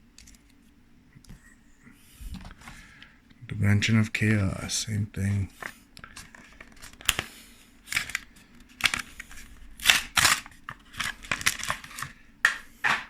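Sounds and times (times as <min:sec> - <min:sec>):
cards sliding: 0:05.5 - 0:13.0
foil pack tearing: 0:06.1 - 0:12.2.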